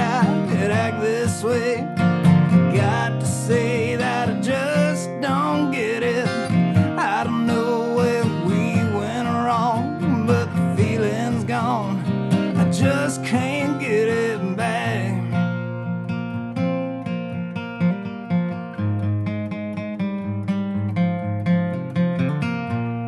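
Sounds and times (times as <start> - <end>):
strummed acoustic guitar: 0.0 - 23.0.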